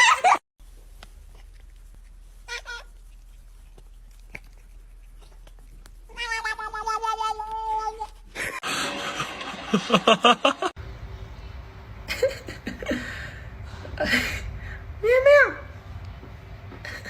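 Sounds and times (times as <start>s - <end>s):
cat meowing: 2.5s - 2.9s, 6.1s - 8.1s.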